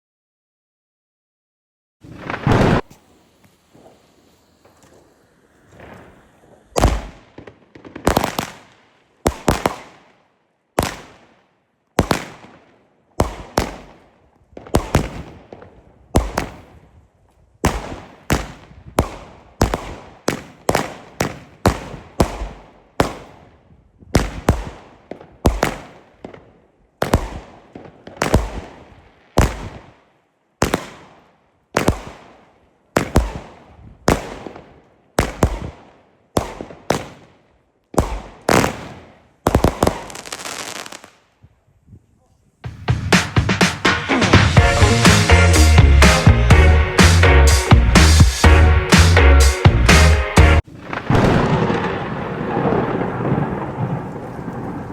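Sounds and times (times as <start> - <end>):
firework bangs: 2.0 - 10.2, 10.8 - 11.4, 12.0 - 16.9, 17.6 - 23.6, 24.2 - 30.0, 30.6 - 41.2, 47.8 - 54.9.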